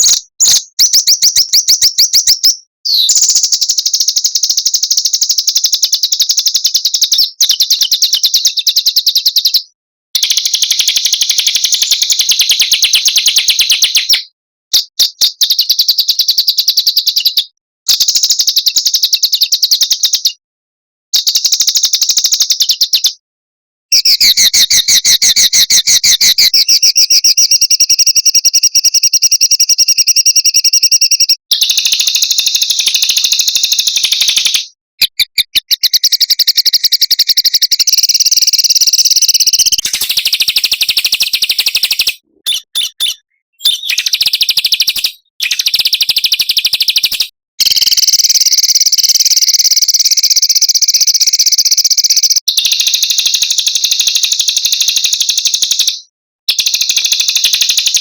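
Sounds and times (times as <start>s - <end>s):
songbirds trilling: 39.6s - 45.6s.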